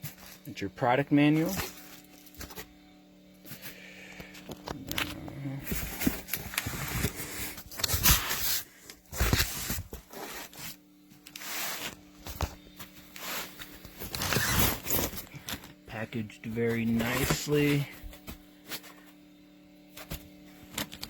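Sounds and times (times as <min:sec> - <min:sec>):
packaging rustling and crinkling: 0:00.0 - 0:00.5, 0:01.3 - 0:02.7, 0:03.5 - 0:15.8.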